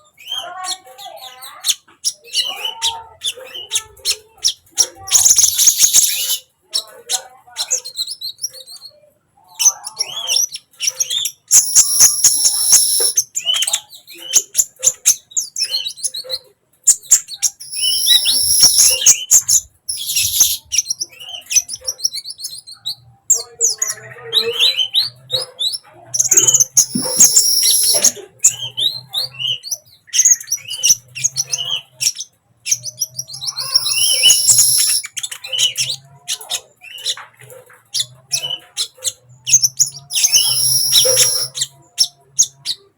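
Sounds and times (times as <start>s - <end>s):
bird chirping and twittering: 0.0s - 42.9s
loud high bird trills: 5.1s - 6.4s, 11.5s - 13.2s, 17.6s - 20.9s, 26.3s - 28.2s, 33.4s - 35.7s, 39.8s - 41.7s.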